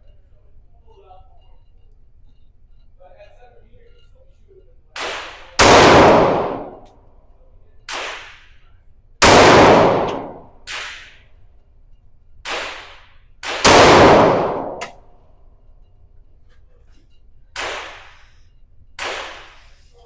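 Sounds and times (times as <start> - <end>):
faint distant gunshots: 5.0 - 6.9, 7.9 - 8.6, 9.2 - 11.2, 12.5 - 15.0, 17.6 - 18.4, 19.0 - 19.8
loud gunshots: 5.0 - 6.9, 7.9 - 8.5, 9.2 - 11.2, 12.5 - 14.9, 17.6 - 18.4, 19.0 - 19.8.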